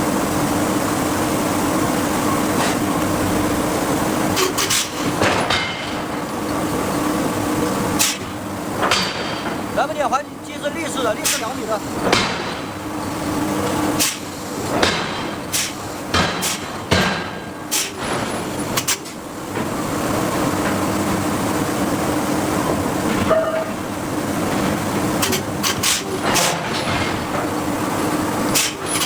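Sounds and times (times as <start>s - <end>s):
machinery hum: 0.0s - 29.0s
forging hammer striking hot steel: 10.7s - 12.9s, 13.9s - 19.2s.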